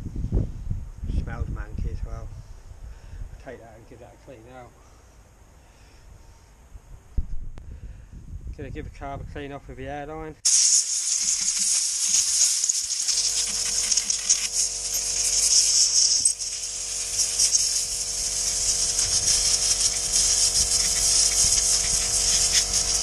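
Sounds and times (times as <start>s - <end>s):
compressed air hissing: 10.4s - 23.0s
steady hum: 10.4s - 23.0s.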